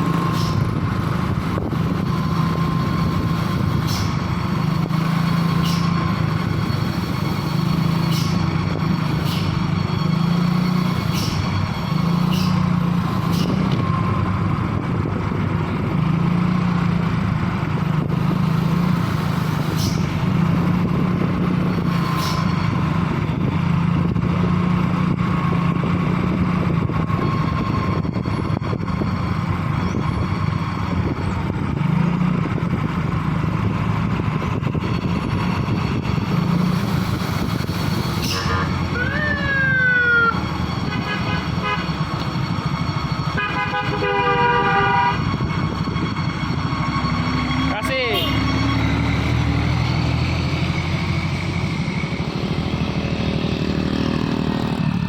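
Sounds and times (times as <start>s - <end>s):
truck engine running: 0.0s - 55.0s
musical horn notes: 40.8s - 42.1s, 43.3s - 45.4s.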